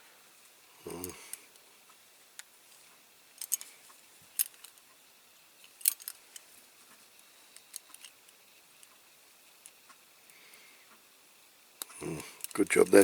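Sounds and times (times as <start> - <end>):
small parts and tools clicking: 3.4 - 5.0, 5.6 - 9.0, 9.6 - 10.4, 11.8 - 13.0.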